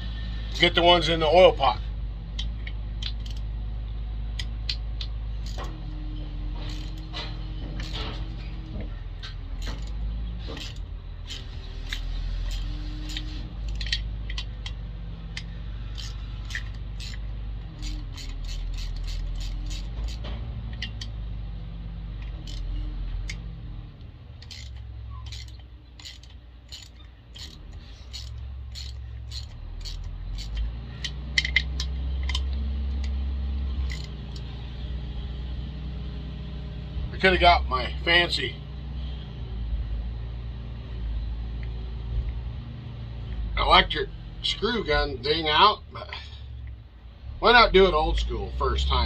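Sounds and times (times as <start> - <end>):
steady low hum: 0.0 - 49.0
ratchet clicking: 2.4 - 3.5, 4.4 - 21.2, 22.1 - 23.5, 24.4 - 34.8
small metallic clinks: 2.5 - 3.5, 5.4 - 21.1, 22.2 - 23.4, 24.4 - 33.2, 33.8 - 34.6.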